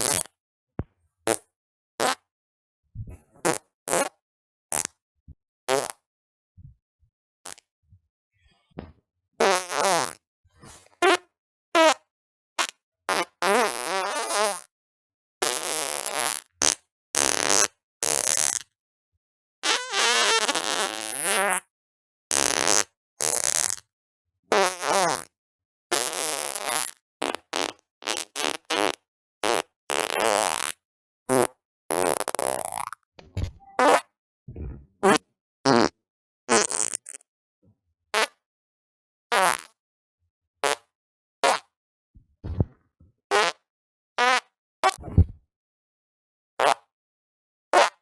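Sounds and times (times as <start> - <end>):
fart sounds: 0.0 - 0.3, 2.0 - 2.2, 3.4 - 5.0, 5.7 - 6.0, 8.8 - 10.2, 12.6 - 14.7, 15.4 - 18.6, 22.3 - 23.9, 24.5 - 25.3, 25.9 - 37.2, 38.2 - 38.4, 39.3 - 39.8, 40.6 - 41.7, 42.4 - 43.6, 44.2 - 45.4, 47.8 - 48.0.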